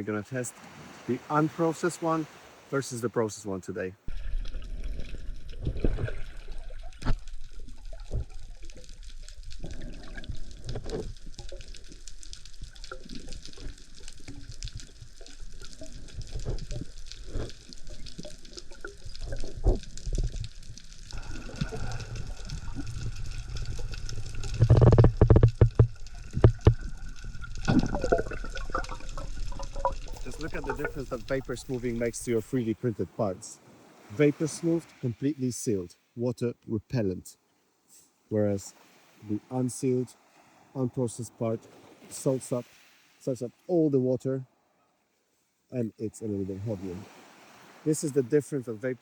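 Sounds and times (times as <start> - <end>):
water sloshing and splashing: 0.0 - 3.0, 4.1 - 35.2, 38.1 - 43.8, 46.2 - 49.0
low rumbling: 4.1 - 32.5.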